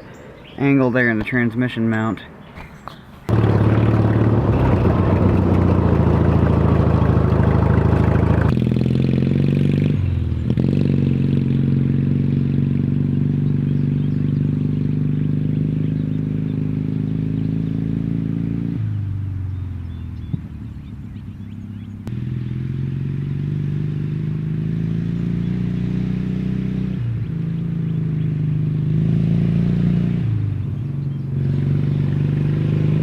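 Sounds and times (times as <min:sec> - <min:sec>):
lawn tractor engine running: 0:02.7 - 0:08.6.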